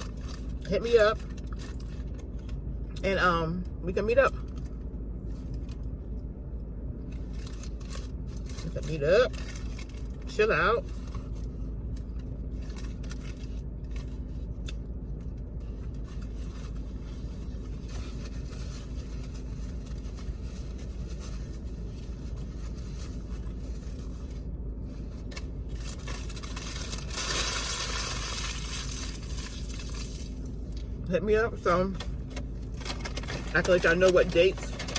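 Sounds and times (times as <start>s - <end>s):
steady low hum: 0.0s - 34.9s
rustling and scraping: 7.1s - 31.0s, 31.9s - 34.9s.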